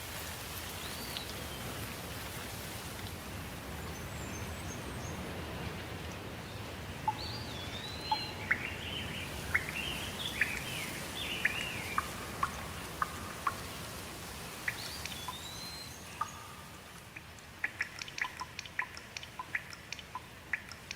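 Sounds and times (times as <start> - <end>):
steady rain falling: 0.0 - 20.9
sharp dripping ticks: 7.0 - 20.9
songbird whistling: 7.1 - 13.6, 14.6 - 16.6.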